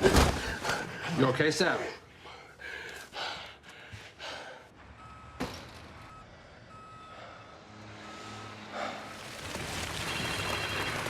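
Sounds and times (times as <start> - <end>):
faint electronic beeps: 5.0 - 8.0.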